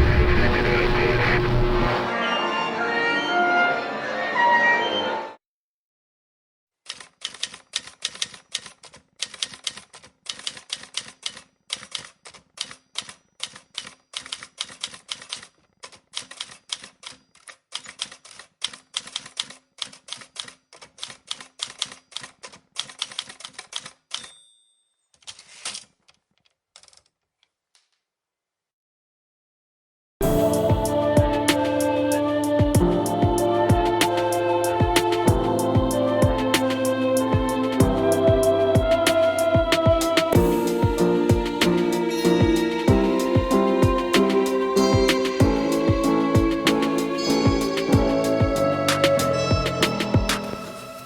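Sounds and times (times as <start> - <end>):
typewriter carriage rattle: 6.9 - 24.3
typewriter bell ring: 24.1 - 25.1.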